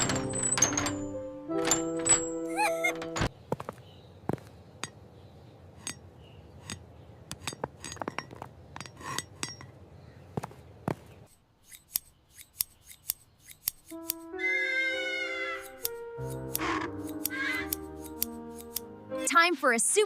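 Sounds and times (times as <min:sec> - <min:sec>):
sharp clicks and clinks: 0:06.7 - 0:09.8.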